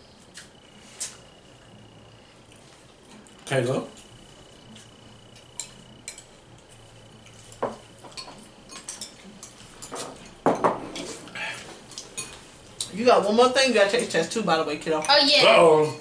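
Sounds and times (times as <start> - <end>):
spoons clinking on bowls: 8.1 - 10.0.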